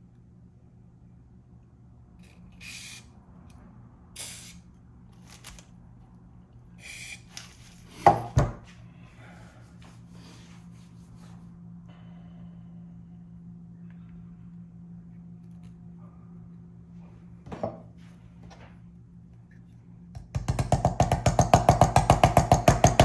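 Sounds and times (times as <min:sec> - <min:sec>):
steady low hum: 0:00.0 - 0:23.0.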